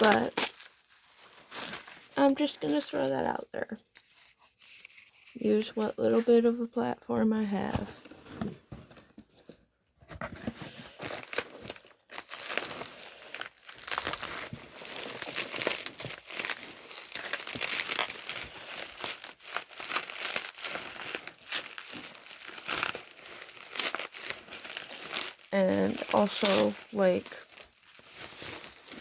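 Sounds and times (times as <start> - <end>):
packaging crinkling and tearing: 0.0 - 6.2, 10.3 - 29.0.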